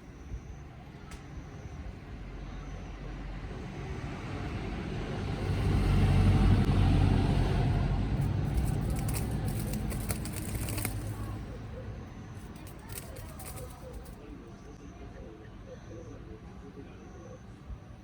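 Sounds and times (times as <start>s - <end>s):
road vehicle passing: 2.2s - 14.2s
faint crackling clicks: 8.2s - 11.5s, 12.4s - 14.2s.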